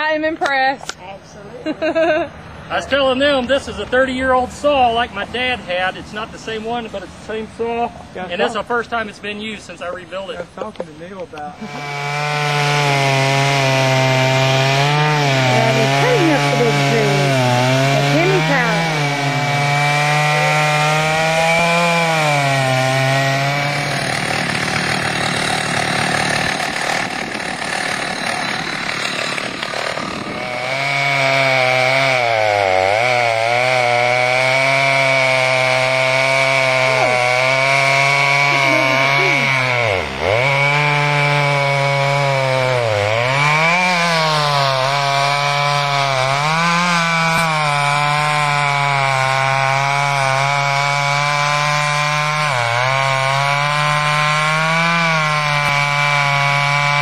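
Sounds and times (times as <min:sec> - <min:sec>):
chainsaw sawing wood: 0:02.8 - 0:57.0.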